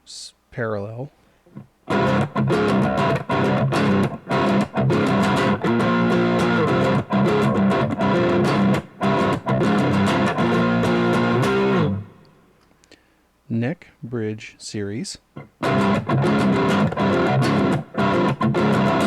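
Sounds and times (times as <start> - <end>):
overdriven electric guitar riff: 1.5 - 12.5, 15.4 - 19.0.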